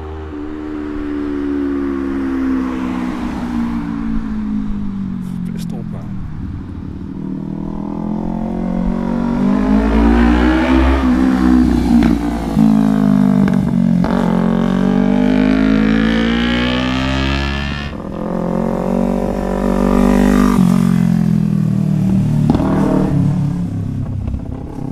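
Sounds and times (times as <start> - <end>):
motorcycle engine revving: 5.2 - 24.9.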